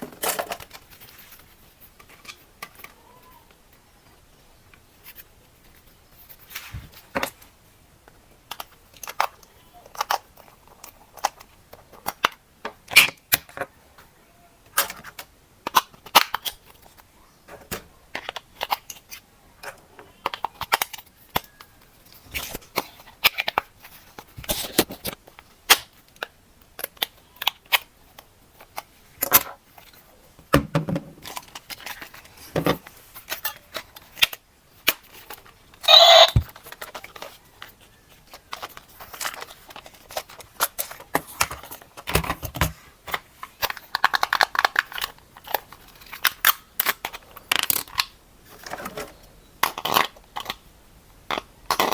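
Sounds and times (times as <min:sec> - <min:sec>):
plastic toy parts clicking: 0:08.5 - 0:13.7, 0:18.1 - 0:21.7, 0:33.2 - 0:37.7, 0:38.3 - 0:48.2
packaging crinkling: 0:31.2 - 0:50.6.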